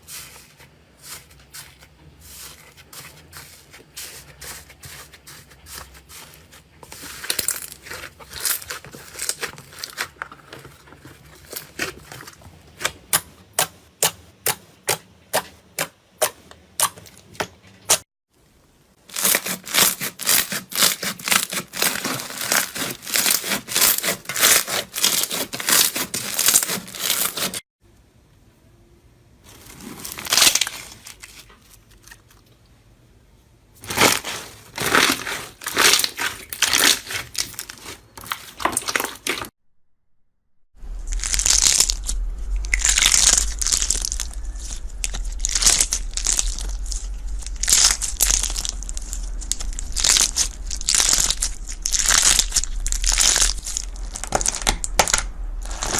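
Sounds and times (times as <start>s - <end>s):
slime crackling crunches: 7.0s - 12.4s, 19.1s - 27.6s, 29.5s - 32.1s, 33.8s - 39.5s, 40.8s - 55.9s
steady low hum: 40.8s - 55.9s.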